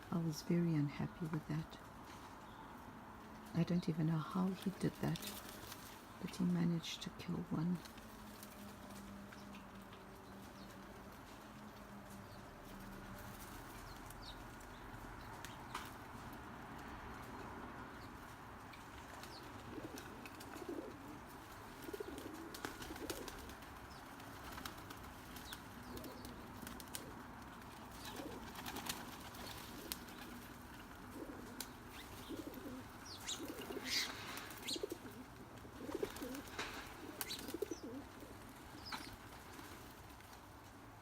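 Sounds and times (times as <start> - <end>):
doves cooing: 18.0 - 40.4
higher bird calls: 31.2 - 35.2.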